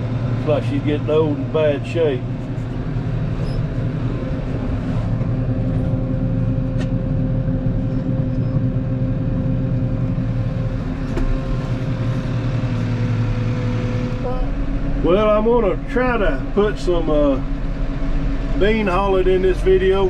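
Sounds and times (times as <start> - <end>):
tractor engine droning: 0.0 - 20.0
thin steady whine: 14.0 - 20.0.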